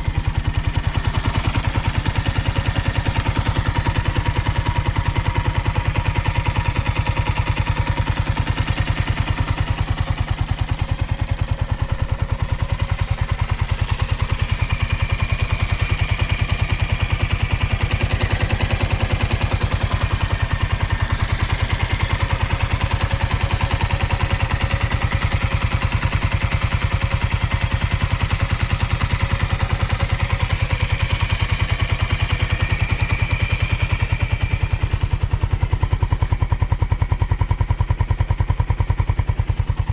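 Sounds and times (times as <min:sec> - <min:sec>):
motorcycle engine idling: 0:00.0 - 0:39.9.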